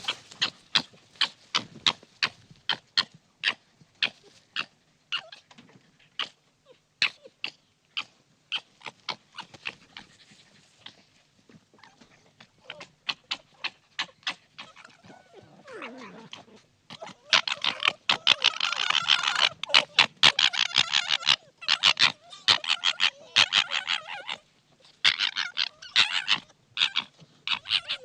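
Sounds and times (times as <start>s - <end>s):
foxes chattering: 7.0s - 11.1s, 11.8s - 28.0s
fox growl: 8.0s - 28.0s
foxes screeching: 12.7s - 24.4s, 25.0s - 28.0s.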